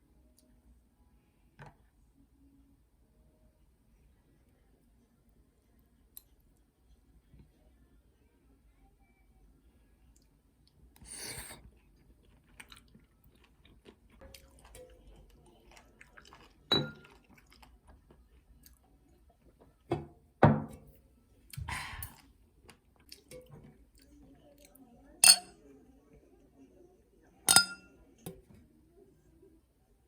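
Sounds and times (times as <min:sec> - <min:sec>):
chewing: 0:10.2 - 0:19.2
tableware knocks: 0:27.5 - 0:27.9.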